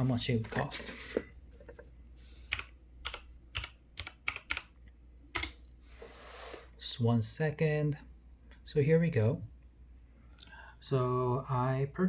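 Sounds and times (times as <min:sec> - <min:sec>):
keyboard typing: 0:02.5 - 0:05.7.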